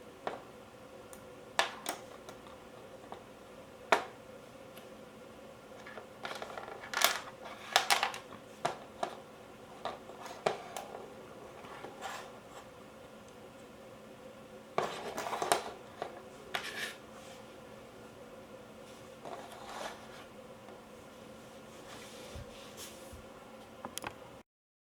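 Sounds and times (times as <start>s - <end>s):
faint steady hum: 0.0s - 24.4s.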